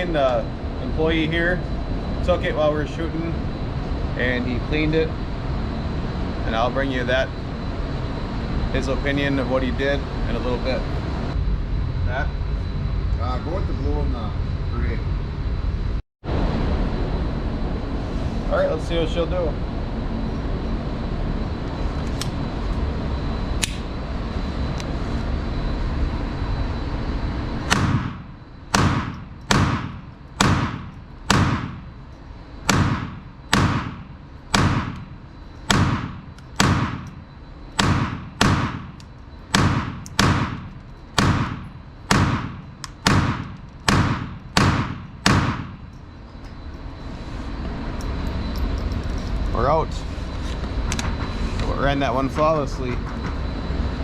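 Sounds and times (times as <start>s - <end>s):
pistol shots with ringing echo: 27.7s - 31.9s, 32.7s - 35.0s, 35.7s - 37.1s, 37.8s - 45.8s.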